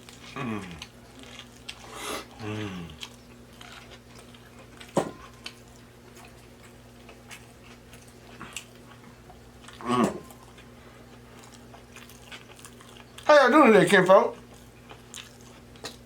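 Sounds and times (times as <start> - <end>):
low electrical hum: 0.0 - 16.0
man's low vocal sounds: 9.8 - 10.3.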